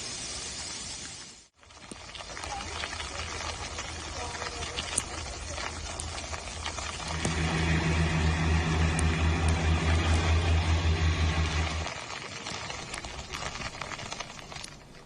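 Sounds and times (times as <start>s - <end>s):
vehicle engine pulsing hum: 7.0s - 11.9s.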